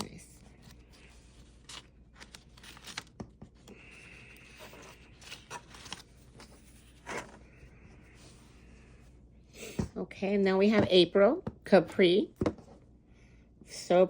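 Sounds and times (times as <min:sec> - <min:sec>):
paper rustling: 0:00.0 - 0:07.6.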